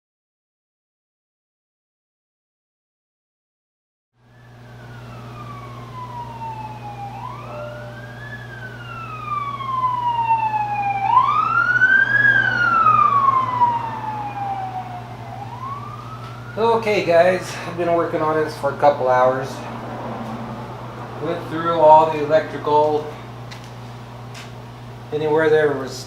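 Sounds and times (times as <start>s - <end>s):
siren wailing: 4.2s - 23.2s
steady low hum: 4.2s - 26.0s.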